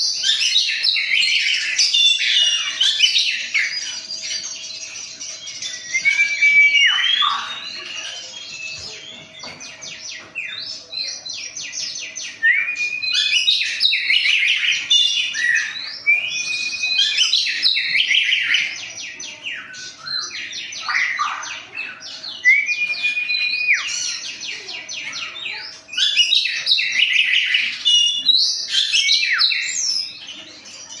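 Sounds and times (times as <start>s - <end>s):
songbird singing trills: 0.0s - 31.0s.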